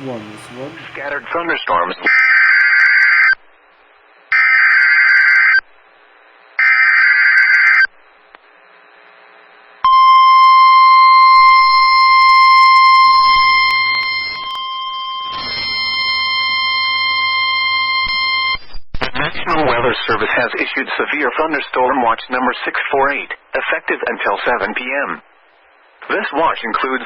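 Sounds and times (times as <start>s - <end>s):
steady warning tone: 0.0s - 1.4s, 9.8s - 18.5s.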